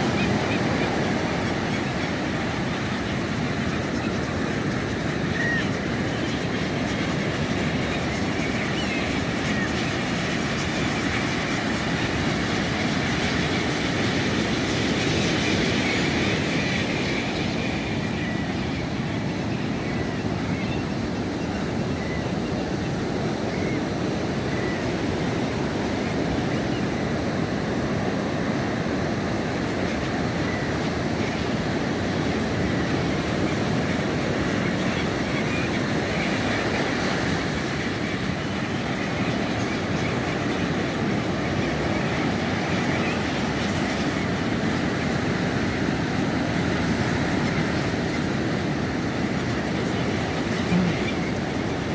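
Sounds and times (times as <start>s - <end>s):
seabirds calling: 0.0s - 51.9s
wind: 0.0s - 51.9s
surf rushing: 49.2s - 51.9s.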